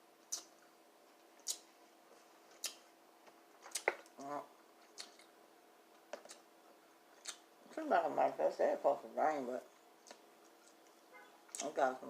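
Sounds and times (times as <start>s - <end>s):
wet mouth smacks while eating: 1.4s - 1.7s, 2.6s - 2.8s, 3.6s - 4.1s, 4.8s - 5.3s.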